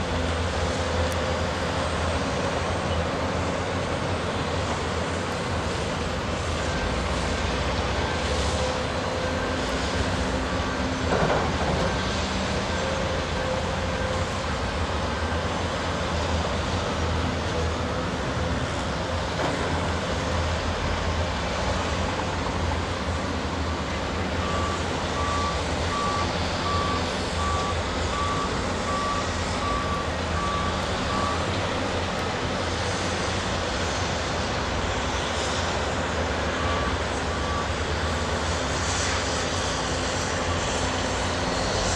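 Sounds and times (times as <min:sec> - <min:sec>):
heavy machinery engines rumbling: 0:00.0 - 0:41.9
reversing alarm beeping: 0:24.2 - 0:32.1, 0:36.5 - 0:38.3.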